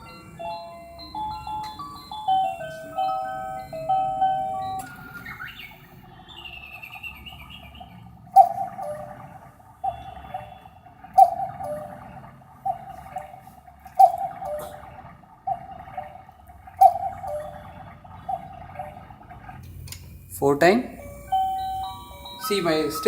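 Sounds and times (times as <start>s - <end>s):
electronic clock chime melody: 0.0s - 7.0s, 19.8s - 23.0s
electronic cuckoo call: 0.0s - 12.1s, 13.9s - 14.9s, 16.8s - 19.0s, 20.8s - 23.0s
bird-like chirp: 0.0s - 19.2s.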